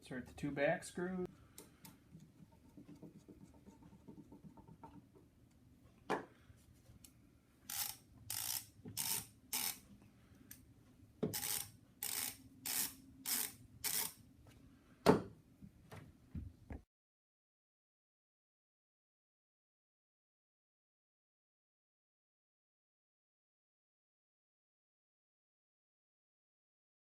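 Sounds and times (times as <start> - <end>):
ratchet clicking: 7.7 - 9.8, 11.4 - 14.2
ratchet rasping strokes: 7.7 - 9.8, 11.3 - 14.2.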